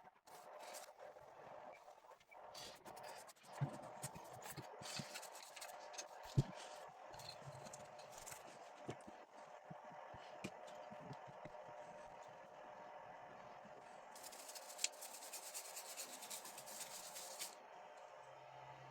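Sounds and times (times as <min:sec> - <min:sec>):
faint steady hum: 0:00.0 - 0:18.9
scratching and scrubbing: 0:02.4 - 0:09.8, 0:14.2 - 0:17.6.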